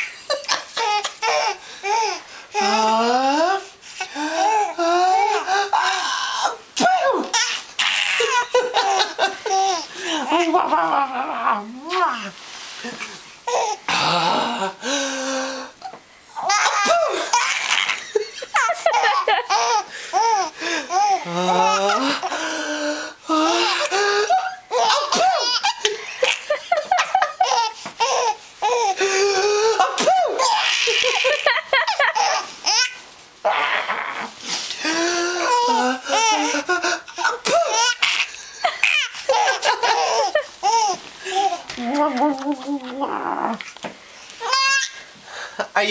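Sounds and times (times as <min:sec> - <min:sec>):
baby laughing: 0:00.0 - 0:02.2, 0:07.0 - 0:11.0, 0:16.4 - 0:22.4, 0:23.4 - 0:29.0, 0:29.6 - 0:34.1, 0:35.4 - 0:43.1
pretend sneezes: 0:06.8 - 0:08.0, 0:25.0 - 0:25.6, 0:29.8 - 0:30.5.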